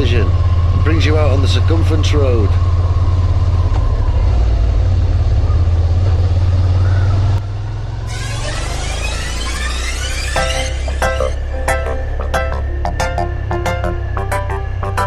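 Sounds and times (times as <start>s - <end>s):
motorcycle engine running: 0.0s - 15.0s
music with rising sweeps: 8.0s - 15.0s.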